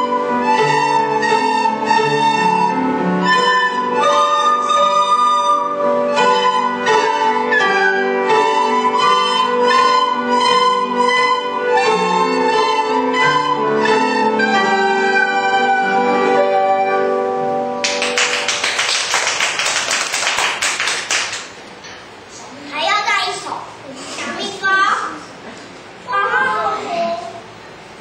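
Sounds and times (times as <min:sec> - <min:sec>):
classical piano piece: 0:00.0 - 0:19.8
audience applause: 0:17.8 - 0:21.6.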